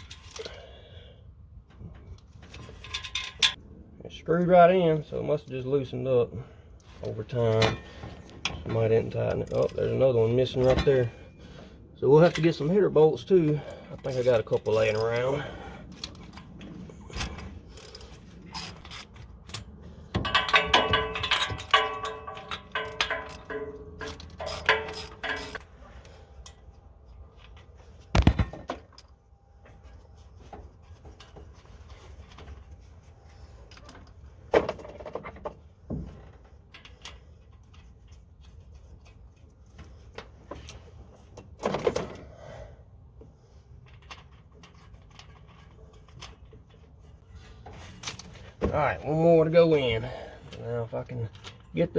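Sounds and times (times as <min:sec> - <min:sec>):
tools knocking against metal: 0:20.2 - 0:25.6.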